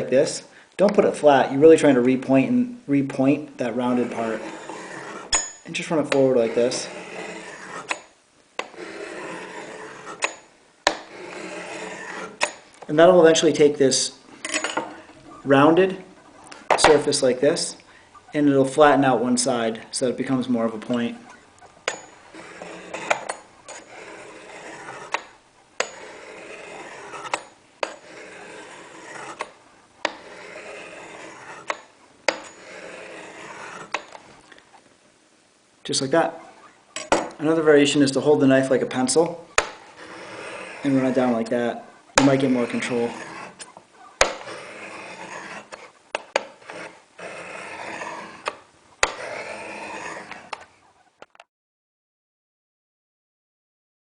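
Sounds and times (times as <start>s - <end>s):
knife scraping on ceramic rods: 3.1s - 34.6s, 36.4s - 51.2s.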